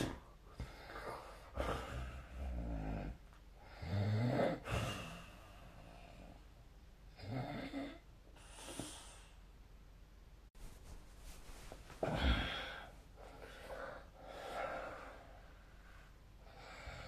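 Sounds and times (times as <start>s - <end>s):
person snoring: 0.0s - 6.4s, 7.2s - 9.3s, 12.0s - 12.9s.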